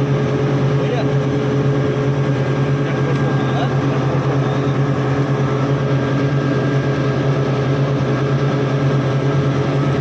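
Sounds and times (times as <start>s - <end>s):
loud low machine hum: 0.0s - 10.0s.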